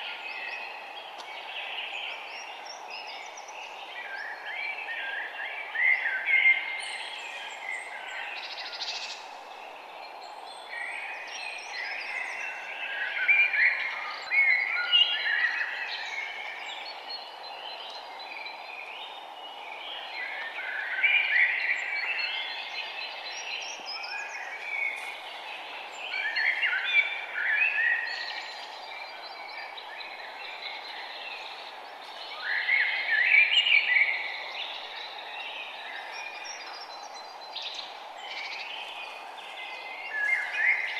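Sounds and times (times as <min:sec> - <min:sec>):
steady background hiss: 0:00.0 - 0:40.9
forest birds warbling: 0:19.8 - 0:40.9.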